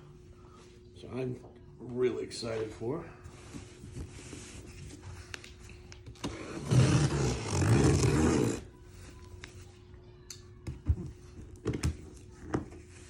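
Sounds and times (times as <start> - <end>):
cardboard and tape tearing: 6.2 - 8.7.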